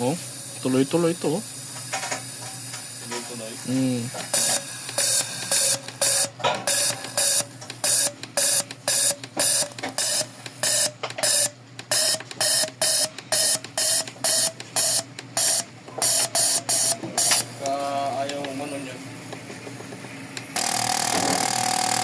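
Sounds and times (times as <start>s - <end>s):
fuel injector solenoid clicking: 4.3s - 18.5s, 20.4s - 22.0s.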